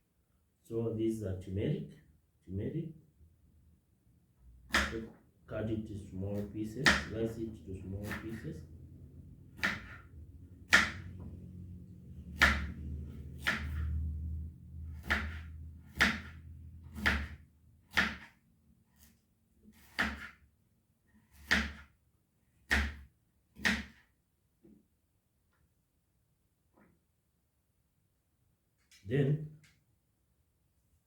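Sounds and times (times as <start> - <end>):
knife chopping on board: 4.7 - 5.2, 6.3 - 7.3, 8.0 - 8.5, 9.5 - 11.3, 12.4 - 12.8, 13.4 - 13.9, 14.9 - 18.4, 19.7 - 20.4, 21.3 - 21.9, 22.6 - 24.1.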